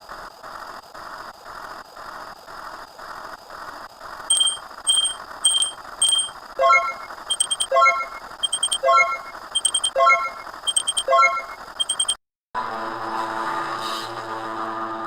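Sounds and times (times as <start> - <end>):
short high electronic beeps: 4.3 - 12.2.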